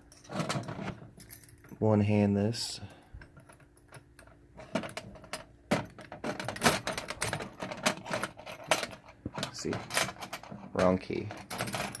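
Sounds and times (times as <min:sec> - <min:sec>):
keys jangling against padlock: 0:11.2 - 0:12.0.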